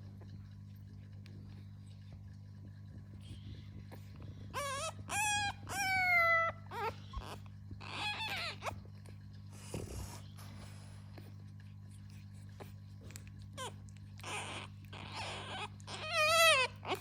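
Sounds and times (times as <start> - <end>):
steady low hum: 0.0 - 17.0
puppy whining: 3.2 - 10.6, 11.2 - 17.0.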